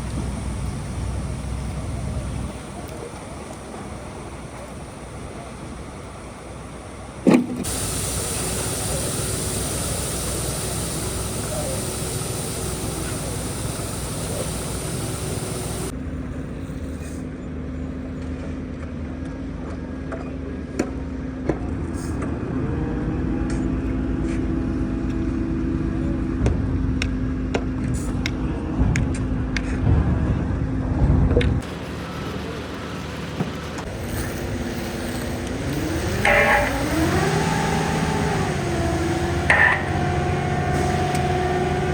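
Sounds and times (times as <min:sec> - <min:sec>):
engine running: 0:00.0 - 0:17.2, 0:31.3 - 0:41.9.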